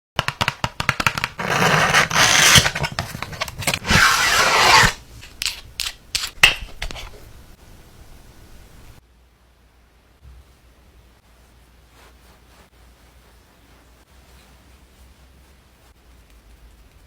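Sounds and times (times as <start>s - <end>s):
clicks and taps: 0.2s - 1.4s
rubbing or scraping: 1.0s - 7.5s.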